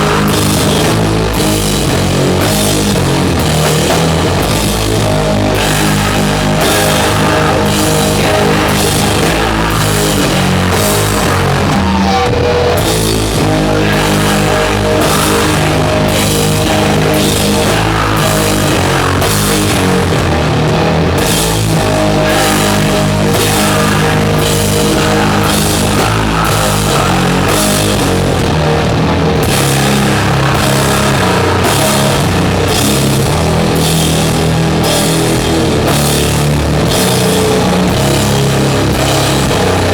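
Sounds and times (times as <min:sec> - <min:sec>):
drum beat: 0:00.0 - 0:12.0, 0:29.4 - 0:34.2
distorted guitars and bass: 0:00.0 - 0:39.9.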